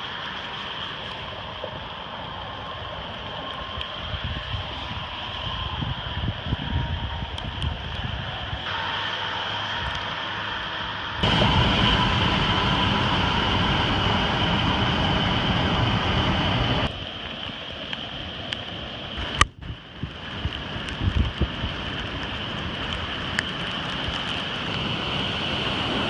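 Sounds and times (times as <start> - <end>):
water and wind rushing: 0.0 - 26.0.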